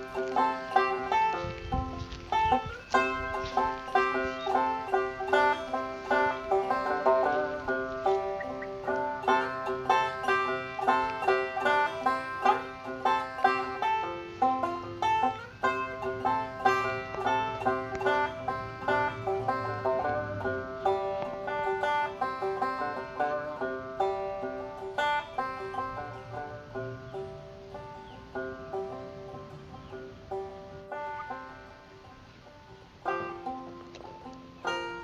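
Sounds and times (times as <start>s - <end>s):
fast banjo picking: 0.0s - 35.0s.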